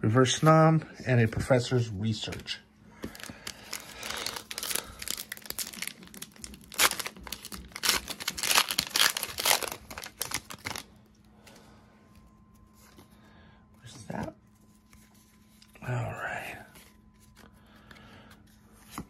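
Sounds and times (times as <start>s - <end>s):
foil wrapper crinkling and tearing: 3.0s - 11.0s.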